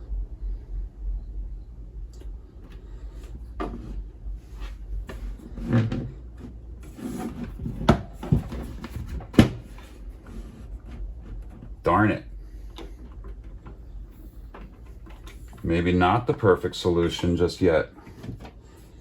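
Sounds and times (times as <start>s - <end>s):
equipment scraping on wooden desk: 4.6s - 9.0s.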